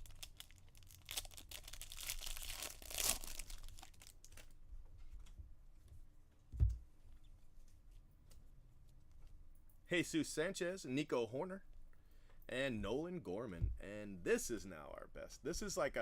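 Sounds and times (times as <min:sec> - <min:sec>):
wrapper tearing and crinkling: 0:00.0 - 0:04.6.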